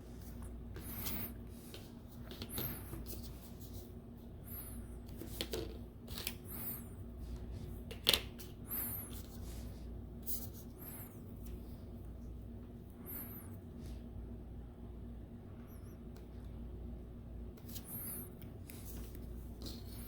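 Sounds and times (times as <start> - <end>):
hands and tool working on tablet: 0.0 - 7.8, 17.6 - 20.0.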